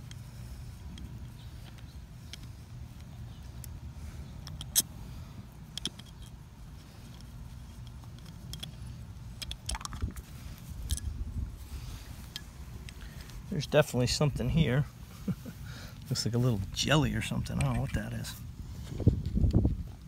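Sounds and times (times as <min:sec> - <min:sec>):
low steady rumble: 0:00.0 - 0:20.0
metallic clicks and clinks of parts: 0:04.4 - 0:04.9, 0:05.6 - 0:06.4, 0:07.0 - 0:11.2.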